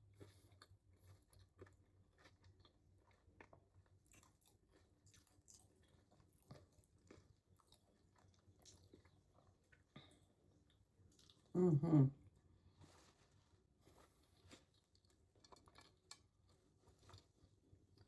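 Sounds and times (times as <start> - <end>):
chewing with wet mouth clicks: 0.2 - 9.9, 14.4 - 18.0.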